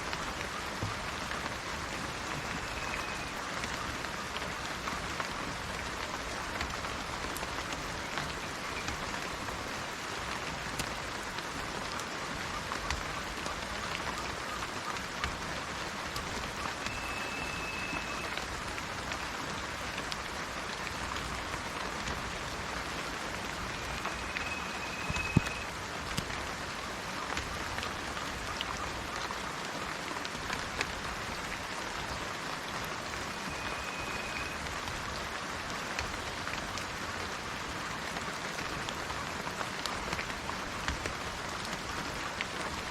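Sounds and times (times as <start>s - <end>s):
steady rain in a forest: 0.0s - 42.9s
water drops ticking: 16.1s - 19.2s, 23.4s - 26.4s
high bird call: 16.7s - 18.4s, 23.7s - 25.7s.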